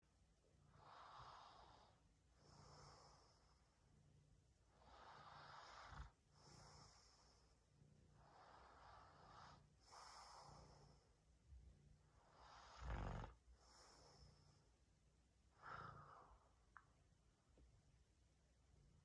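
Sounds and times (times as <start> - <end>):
person snoring faintly: 12.2 - 14.7.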